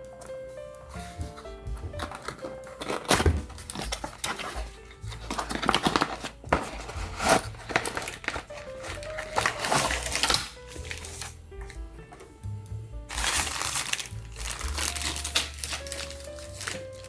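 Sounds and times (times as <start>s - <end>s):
background music: 0.0s - 17.0s
packaging crinkling: 1.8s - 11.8s, 13.1s - 17.0s.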